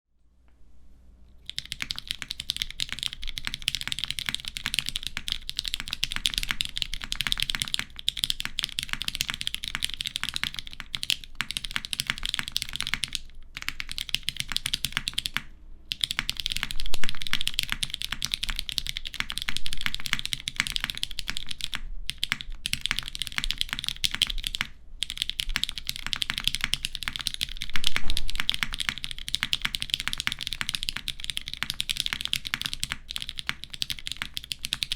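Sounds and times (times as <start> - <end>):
mechanical keyboard typing: 1.4 - 34.9.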